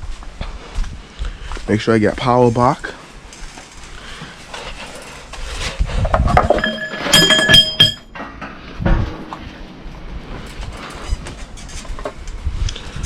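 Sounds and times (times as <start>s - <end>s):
metal objects clinking: 6.4s - 8.5s.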